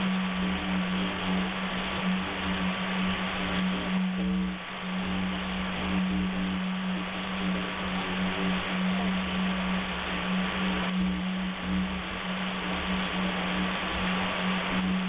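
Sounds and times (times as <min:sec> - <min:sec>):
low drone tone: 0:00.0 - 0:15.0
radio static hiss: 0:00.0 - 0:15.0.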